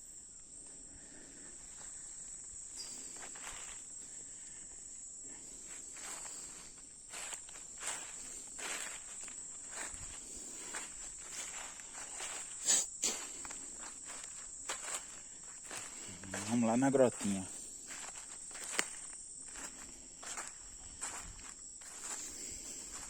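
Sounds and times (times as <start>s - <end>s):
high-pitched insect chorus: 0.0s - 23.0s
footsteps: 5.7s - 23.0s.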